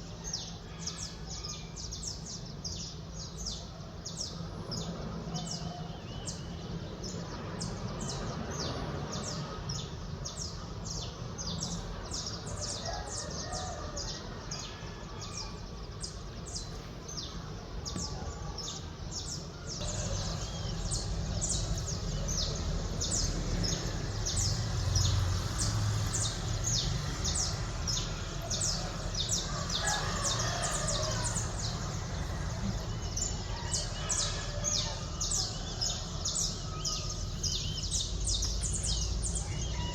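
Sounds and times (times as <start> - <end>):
distant rooster crowing: 0.0 - 2.1, 12.5 - 16.0, 17.9 - 39.9
birds chirping: 0.0 - 39.9
low city rumble: 0.0 - 39.9.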